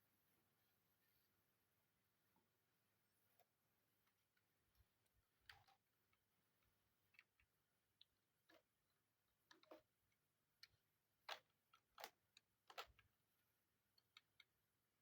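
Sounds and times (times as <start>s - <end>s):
computer parts clicking and tapping: 5.3s - 13.2s, 13.9s - 14.6s.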